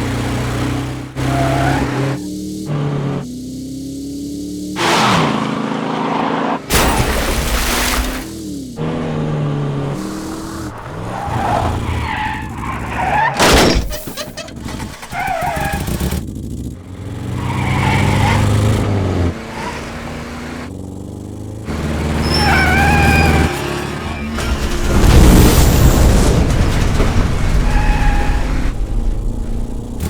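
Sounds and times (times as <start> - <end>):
car engines revving: 0.0 - 30.0
tyre squeals: 10.0 - 16.0, 22.0 - 24.7.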